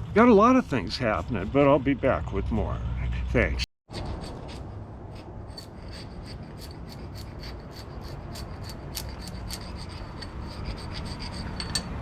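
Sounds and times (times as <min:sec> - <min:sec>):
tool scraping paint off metal: 0:03.9 - 0:12.0.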